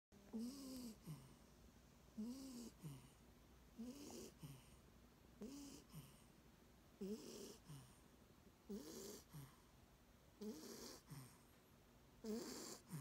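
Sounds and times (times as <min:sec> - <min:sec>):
soft wheezy snoring: 0:00.3 - 0:01.4, 0:02.2 - 0:03.2, 0:03.8 - 0:04.8, 0:05.4 - 0:06.3, 0:07.0 - 0:08.0, 0:08.7 - 0:09.7, 0:10.4 - 0:11.5, 0:12.2 - 0:13.0.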